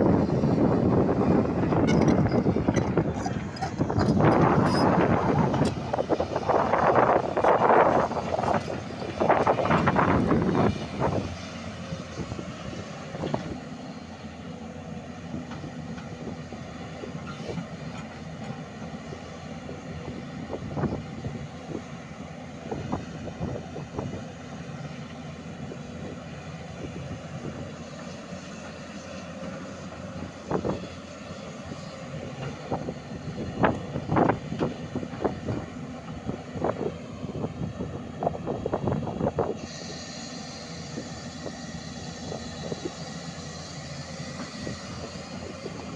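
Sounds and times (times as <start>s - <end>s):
excavator diesel engine running: 0.0s - 45.9s.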